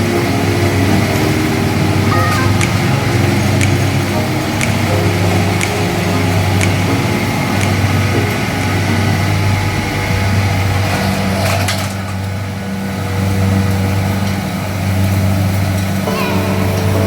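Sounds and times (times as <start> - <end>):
engine humming steadily: 0.0 - 17.0
sharp ticks: 2.0 - 8.4.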